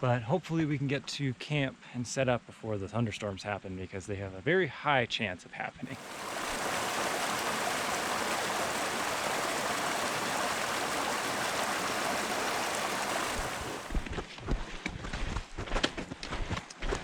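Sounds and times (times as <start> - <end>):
mountain stream rushing: 5.9 - 14.1.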